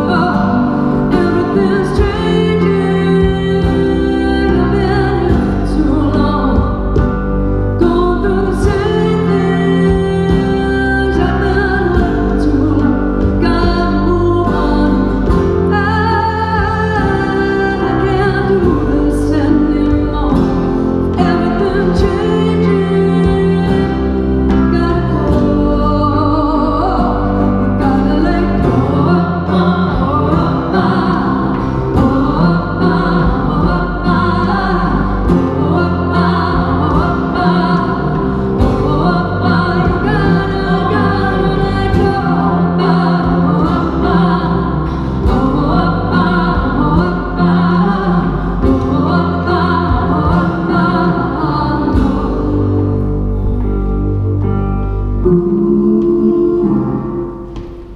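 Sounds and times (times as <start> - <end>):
guitar: 0.0 - 57.9
keyboard: 0.0 - 57.9
person singing: 0.0 - 57.9
sharp rhythmic drum strikes: 27.0 - 53.6.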